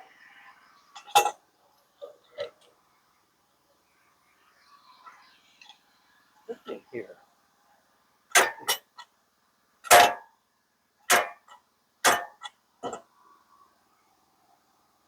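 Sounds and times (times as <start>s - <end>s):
sharp knocks and clanks: 8.4s - 8.9s, 9.9s - 10.2s, 11.1s - 13.0s.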